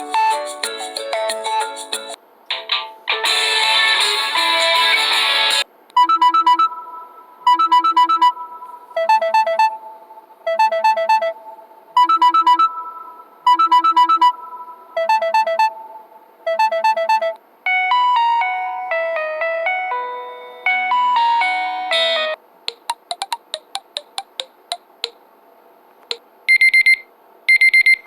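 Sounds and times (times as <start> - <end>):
electronic alarm beeping: 6.0 - 18.2, 26.5 - 28.0.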